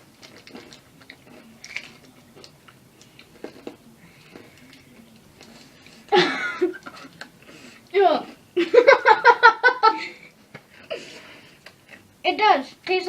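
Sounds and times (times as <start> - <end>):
chewing crunchy snack: 0.0 - 6.1.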